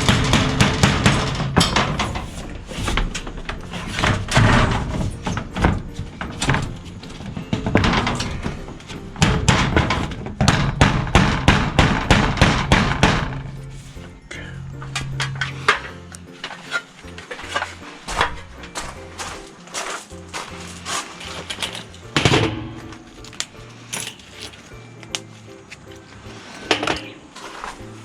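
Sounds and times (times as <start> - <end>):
sharp knocks and bangs: 0.0 - 14.2, 20.4 - 24.2.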